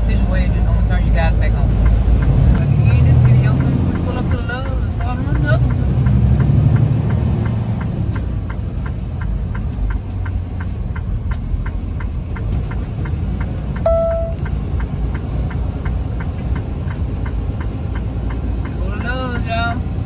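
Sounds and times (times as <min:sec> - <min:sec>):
truck diesel engine rumble: 0:00.0 - 0:20.0
turn signal clicking: 0:01.6 - 0:19.8
short beep: 0:13.8 - 0:14.5.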